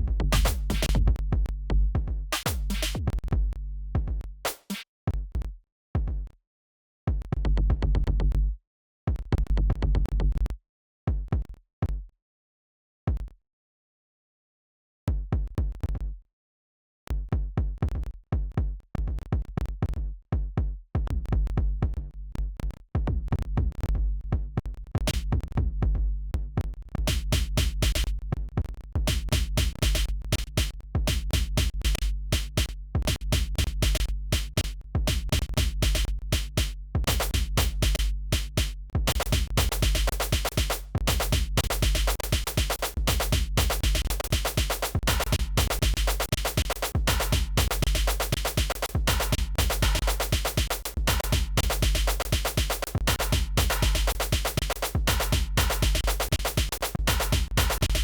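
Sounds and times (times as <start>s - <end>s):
electronic music with drum-machine beat: 0.0s - 1.2s, 2.4s - 3.2s, 27.1s - 28.1s, 29.0s - 58.0s.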